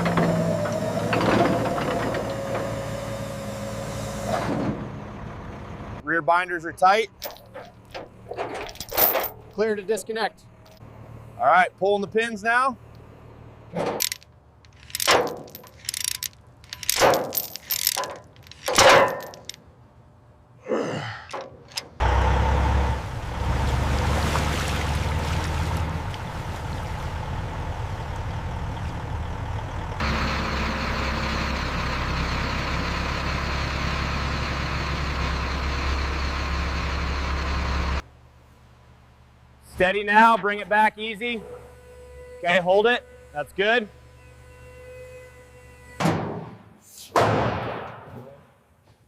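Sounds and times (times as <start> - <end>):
metallic knocks and clanks: 7.2 - 9.6, 13.7 - 19.6
vehicle engine running: 22.0 - 39.6.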